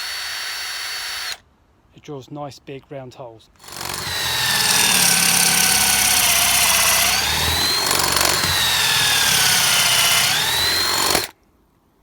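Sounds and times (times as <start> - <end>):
cordless drill boring into log: 3.6 - 11.3.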